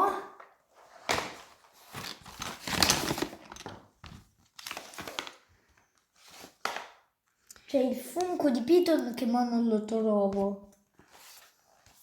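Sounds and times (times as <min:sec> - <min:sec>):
plastic wrapper crinkling: 0:01.8 - 0:05.5.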